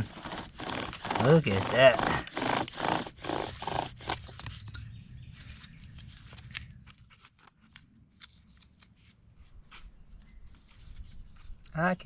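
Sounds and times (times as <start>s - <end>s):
wooden bow drill clicking and scraping: 0.0s - 8.9s.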